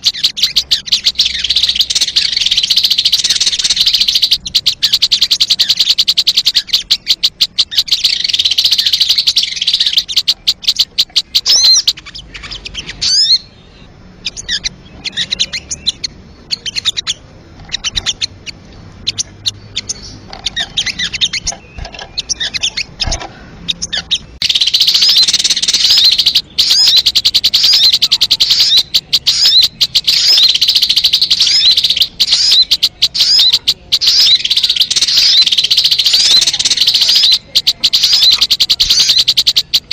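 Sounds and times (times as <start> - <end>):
bird chittering trill: 0.0 - 39.9.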